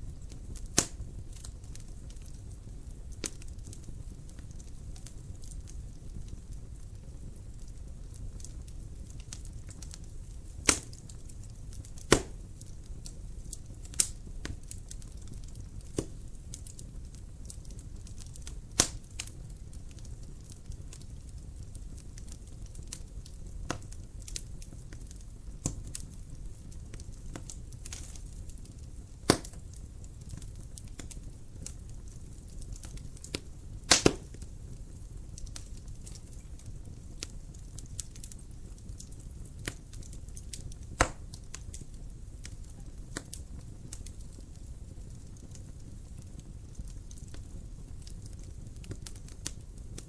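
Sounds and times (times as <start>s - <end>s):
low rumble of flames: 0.0s - 50.0s
wood fire crackling: 0.0s - 50.0s.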